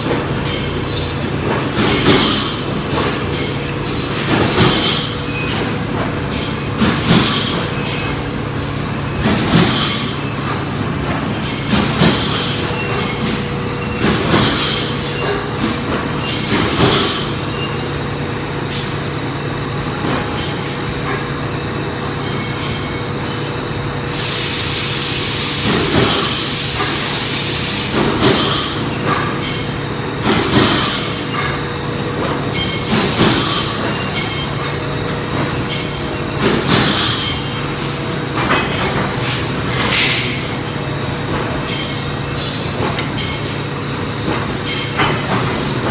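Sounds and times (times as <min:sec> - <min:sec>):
plasma cutter hissing: 0:24.1 - 0:28.0.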